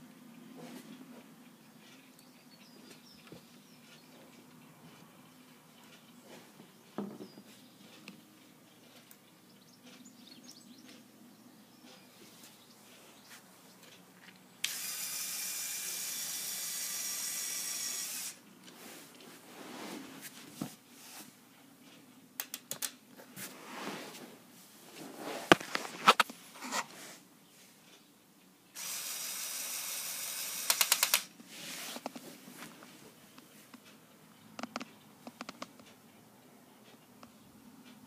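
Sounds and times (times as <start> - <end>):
electric motor whirring: 14.6 - 18.4, 28.8 - 31.2.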